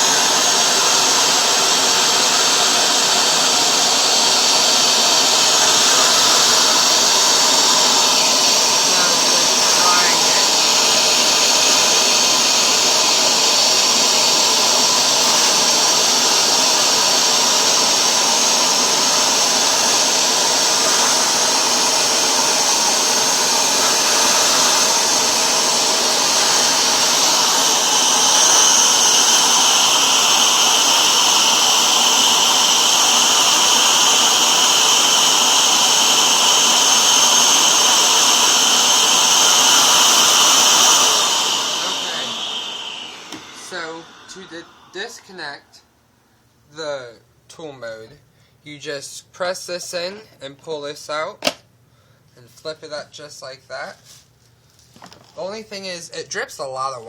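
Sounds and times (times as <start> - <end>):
water spraying and extracting: 0.0 - 45.1
carpet washer suction motor: 0.0 - 45.7.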